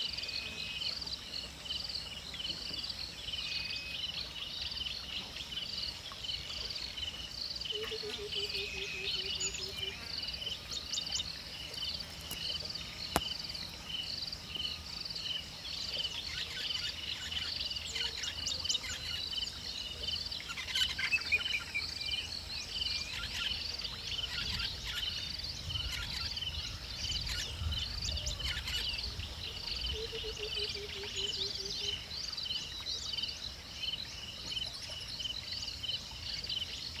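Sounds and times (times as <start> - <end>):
flurry of other chirps: 7.2 - 15.5.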